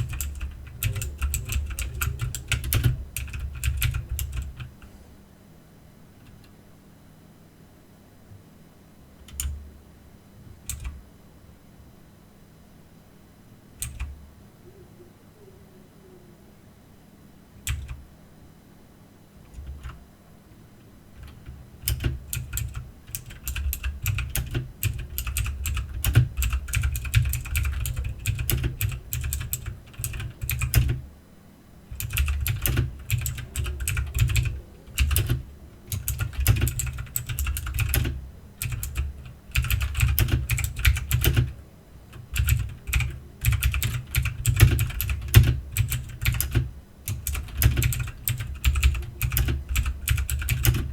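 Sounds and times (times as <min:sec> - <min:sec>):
mechanical keyboard typing: 0:00.0 - 0:04.8, 0:09.3 - 0:09.6, 0:10.6 - 0:11.0, 0:13.8 - 0:14.1, 0:17.6 - 0:18.0, 0:19.5 - 0:20.0, 0:21.2 - 0:31.0, 0:31.9 - 0:50.9.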